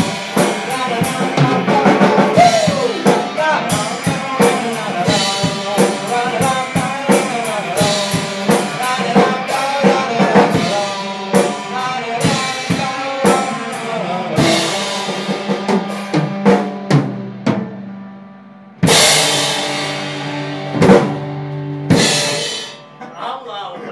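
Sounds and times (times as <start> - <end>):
drum kick and snare beats: 0.0 - 13.6
live band playing: 0.0 - 23.1.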